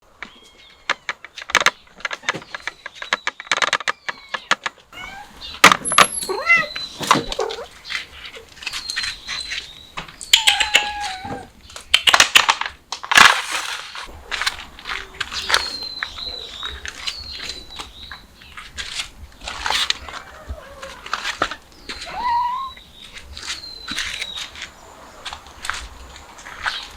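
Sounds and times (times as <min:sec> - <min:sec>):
cats meowing: 0:03.7 - 0:11.6, 0:19.4 - 0:24.4.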